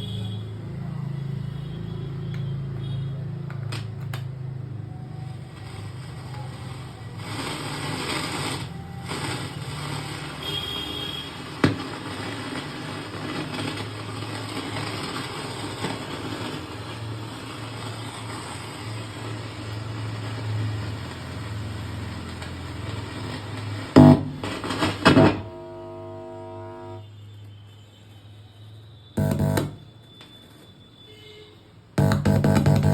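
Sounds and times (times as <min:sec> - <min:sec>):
amplifier hum with hiss: 0:24.0 - 0:27.0, 0:29.2 - 0:29.9, 0:32.0 - 0:32.9
keyboard tone: 0:24.0 - 0:27.0, 0:29.2 - 0:29.8, 0:32.0 - 0:32.9.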